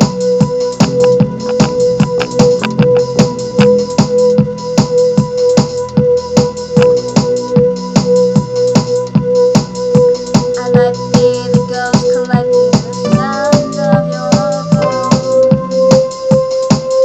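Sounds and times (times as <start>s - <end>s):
drum machine beat: 0.0s - 17.0s
synthesizer tones: 0.6s - 7.6s, 13.0s - 16.4s.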